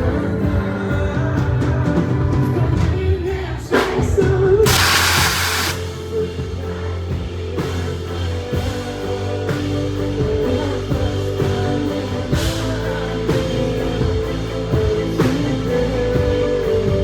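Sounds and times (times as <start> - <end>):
live band playing pop music: 0.0 - 17.0
cymbal crash: 4.7 - 6.1.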